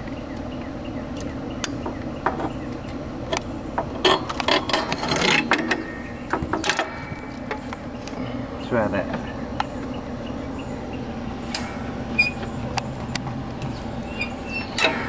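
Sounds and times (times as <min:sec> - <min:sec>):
metal tools clanking and scraping: 0:03.8 - 0:07.8.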